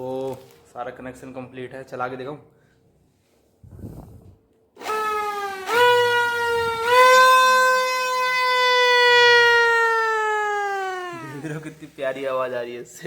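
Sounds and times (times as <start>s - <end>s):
toy horn long tone: 4.8s - 11.6s.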